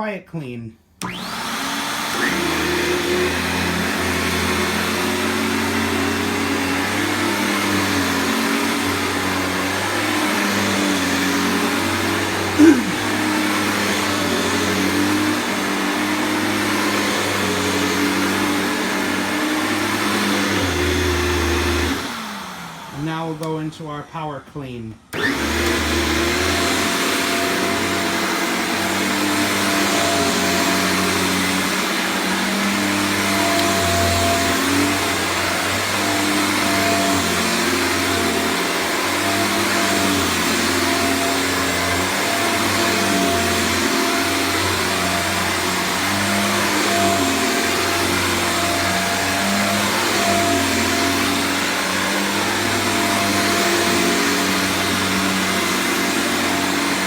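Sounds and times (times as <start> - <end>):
vacuum cleaner running: 1.0 - 23.9, 25.0 - 57.0.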